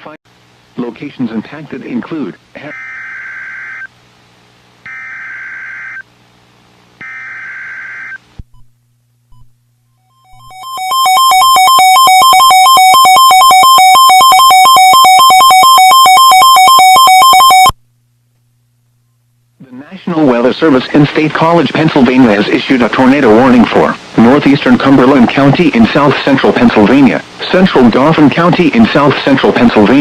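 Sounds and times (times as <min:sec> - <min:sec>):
warbling electronic attention tone: 0:10.0 - 0:17.7.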